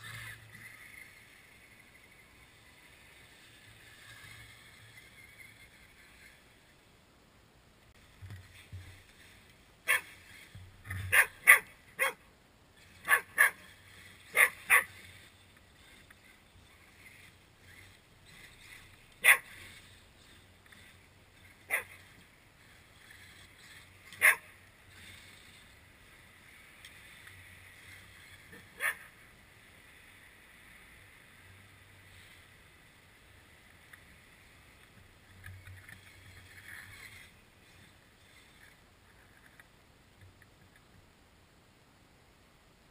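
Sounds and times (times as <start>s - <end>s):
dog barking: 9.9s - 10.1s, 11.1s - 12.2s, 13.0s - 13.6s, 14.3s - 14.9s, 19.2s - 19.5s, 21.7s - 21.9s, 24.2s - 24.5s, 28.8s - 29.0s.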